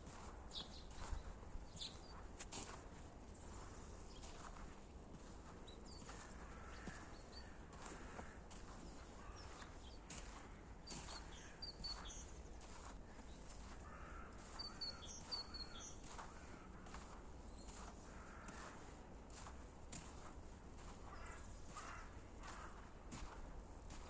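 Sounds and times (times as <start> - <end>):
slow footsteps on a path: 0.0 - 24.0
small birds chirping: 0.2 - 2.8, 3.5 - 19.5.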